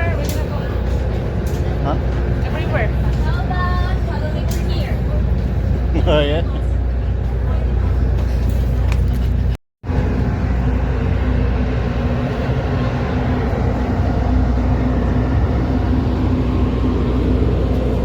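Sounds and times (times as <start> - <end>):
ferry engines humming: 0.0 - 18.0
broad rushing noise: 6.7 - 18.0.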